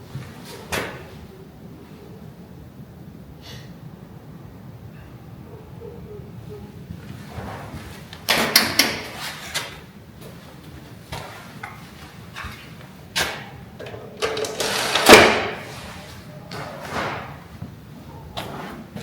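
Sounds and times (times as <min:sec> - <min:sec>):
hard parts clattering and knocking: 0:08.2 - 0:09.7, 0:13.2 - 0:15.7.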